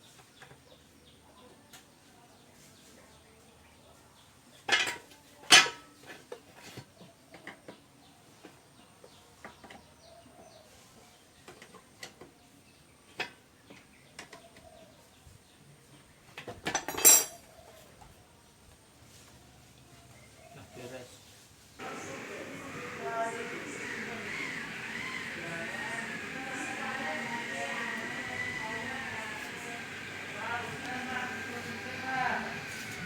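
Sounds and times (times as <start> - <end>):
metal tools clinking: 16.8 - 17.4.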